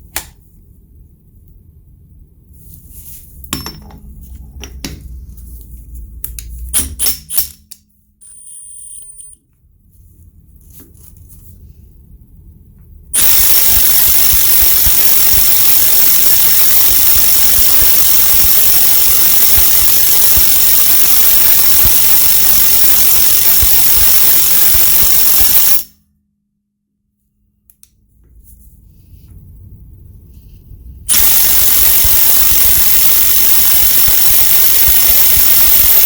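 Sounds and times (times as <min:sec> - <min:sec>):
impact wrench hammering: 0:03.5 - 0:05.1, 0:06.7 - 0:09.4.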